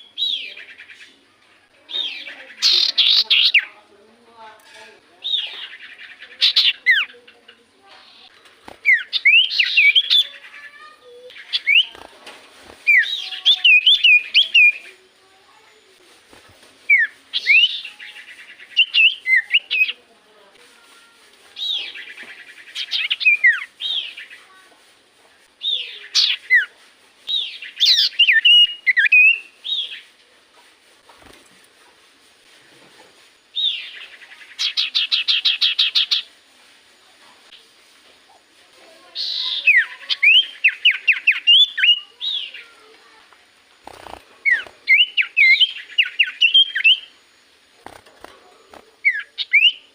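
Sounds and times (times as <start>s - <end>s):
bird whistling song: 8.0s - 10.4s, 11.3s - 12.0s, 12.9s - 15.0s, 16.9s - 20.0s, 27.3s - 30.0s, 39.2s - 42.6s, 44.4s - 47.2s, 49.0s - 49.9s.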